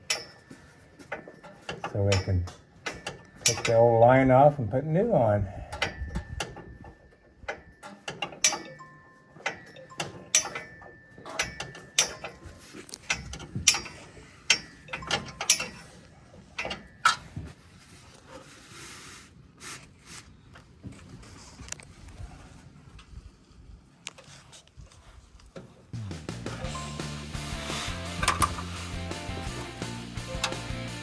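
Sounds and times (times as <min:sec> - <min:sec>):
hand tools clinking on metal: 0:00.0 - 0:17.5, 0:27.6 - 0:31.0.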